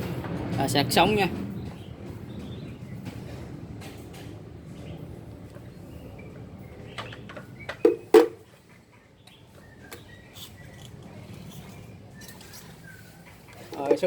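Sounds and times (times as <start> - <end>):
sharp knocks of handled charger: 7.8 - 8.4.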